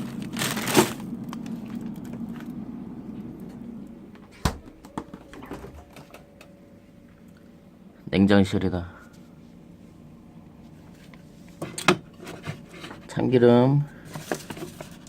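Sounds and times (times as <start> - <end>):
plastic food pack rustling: 0.0 - 2.4, 14.0 - 15.0
refrigerator hum: 0.0 - 15.0.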